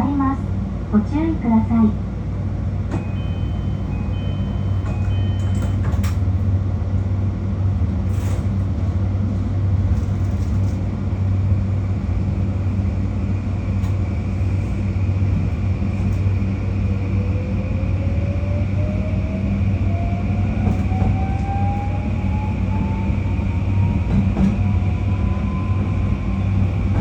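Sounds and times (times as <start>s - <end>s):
train low hum: 0.0s - 27.0s
two-tone door chime: 2.9s - 6.2s.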